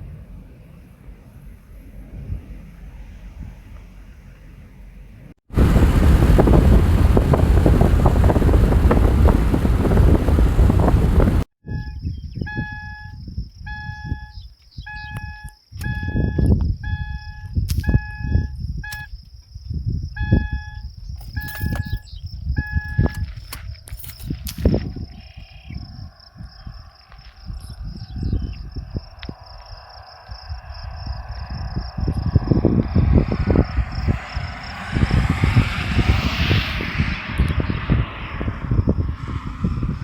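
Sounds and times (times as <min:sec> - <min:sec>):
wind buffeting microphone: 0:00.0 - 0:14.2, 0:14.8 - 0:18.9, 0:19.6 - 0:40.0
high insect drone: 0:24.6 - 0:35.2.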